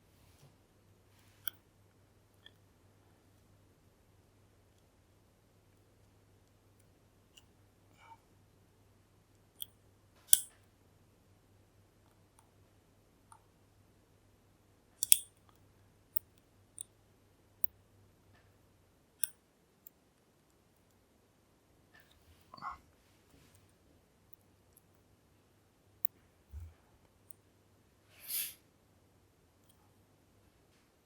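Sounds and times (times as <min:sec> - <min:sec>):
lock pick clicking against pins: 0:10.3 - 0:10.5, 0:15.0 - 0:15.4.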